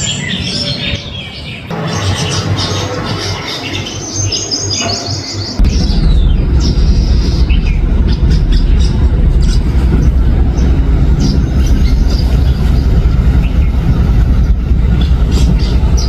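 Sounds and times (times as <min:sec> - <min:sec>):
small birds chirping: 0:00.0 - 0:16.0
steady low rumble: 0:05.6 - 0:16.0.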